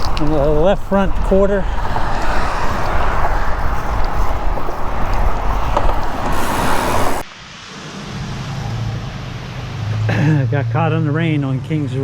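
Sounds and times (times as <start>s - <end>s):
wind rushing over microphone: 0.0s - 7.2s.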